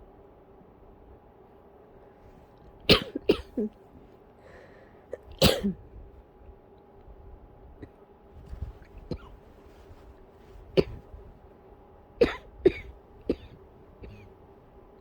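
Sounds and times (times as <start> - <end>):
person coughing into pillow: 2.9 - 3.8, 5.2 - 5.9, 7.8 - 11.3, 12.2 - 14.4.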